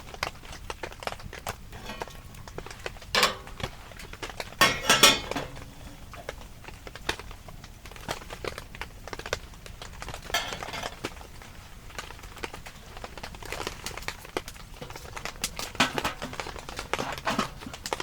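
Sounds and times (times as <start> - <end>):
metal cookware clattering: 1.0 - 6.5, 10.0 - 11.7, 12.3 - 18.0.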